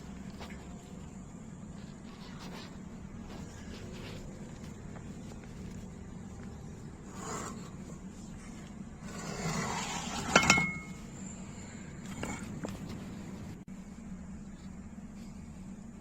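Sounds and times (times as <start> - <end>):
steady low hum: 0.0 - 16.0
metal scraping and rubbing: 6.7 - 11.3.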